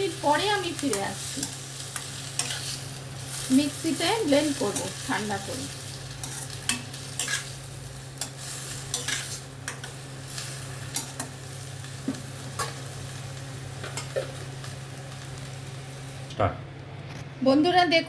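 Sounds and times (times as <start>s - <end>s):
food sizzling in a pan: 0.0s - 16.3s
spatula scraping a pan: 1.4s - 3.5s, 6.2s - 7.6s, 8.2s - 9.4s.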